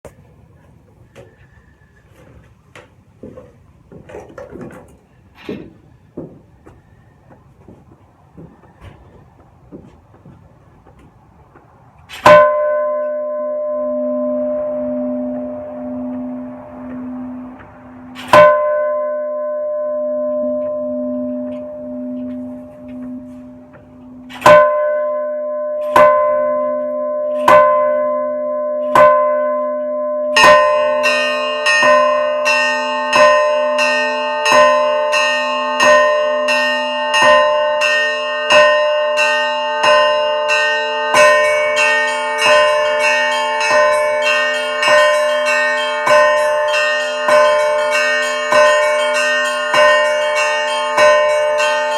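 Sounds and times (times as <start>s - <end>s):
heavy church bell strokes: 11.7s - 51.9s
several church bells ringing: 12.1s - 51.9s
low bell hum: 12.2s - 51.9s.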